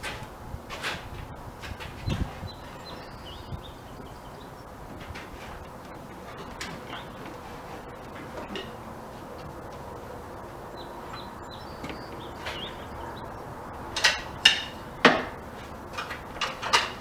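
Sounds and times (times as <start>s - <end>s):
knocks and clacks of tool parts: 0.0s - 3.2s, 3.9s - 10.0s, 11.1s - 13.3s, 13.9s - 17.0s.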